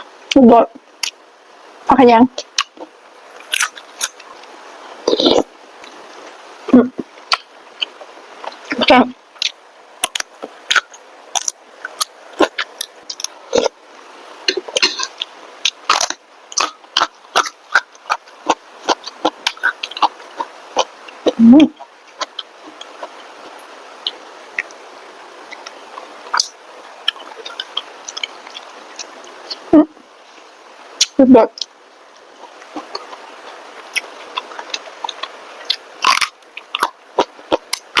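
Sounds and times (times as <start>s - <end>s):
person chewing with mouth smacks: 2.4s - 6.0s, 9.4s - 13.8s, 14.4s - 24.8s, 25.5s - 29.6s, 31.0s - 38.0s.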